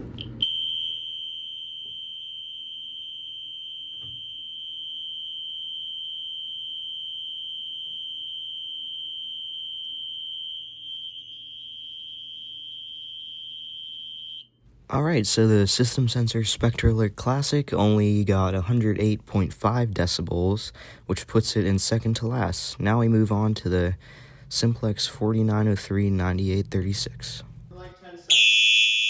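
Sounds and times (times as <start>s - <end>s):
fire alarm horn high-pitched tone: 0.4s - 14.6s, 28.3s - 29.0s.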